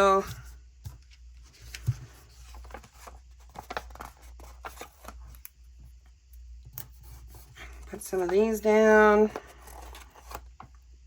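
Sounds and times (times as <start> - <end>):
paper rustling and tapping: 0.2 - 5.2.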